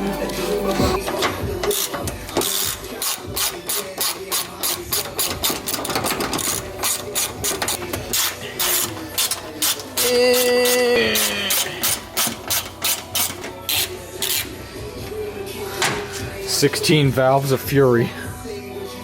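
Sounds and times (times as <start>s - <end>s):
ratchet wrench clicking: 1.2s - 14.5s.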